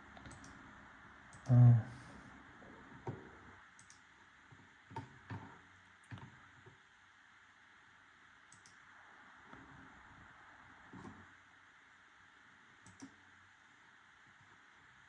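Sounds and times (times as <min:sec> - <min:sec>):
person humming: 0:01.4 - 0:02.2.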